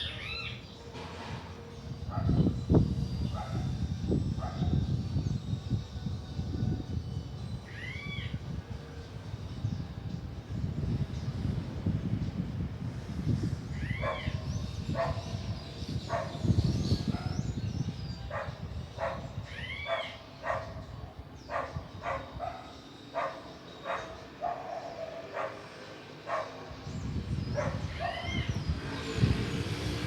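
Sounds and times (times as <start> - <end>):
low wind rumble: 0.0 - 30.0
dog barking: 14.0 - 14.4, 15.0 - 15.3, 16.1 - 16.4, 18.3 - 19.3, 19.9 - 20.8, 21.5 - 25.6, 26.3 - 26.6, 27.6 - 28.3.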